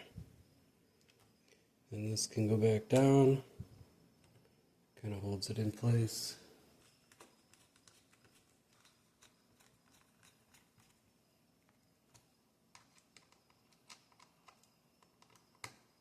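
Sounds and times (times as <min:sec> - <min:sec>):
faint clicks handling laptop parts: 0:01.0 - 0:01.6, 0:06.8 - 0:11.0, 0:11.6 - 0:16.0.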